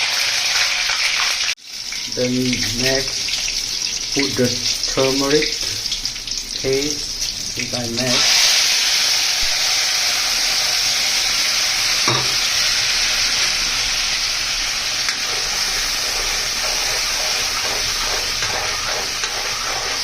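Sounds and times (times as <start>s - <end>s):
spice paste sizzling in oil: 0.0s - 20.0s
spatula stirring in pan: 12.0s - 20.0s.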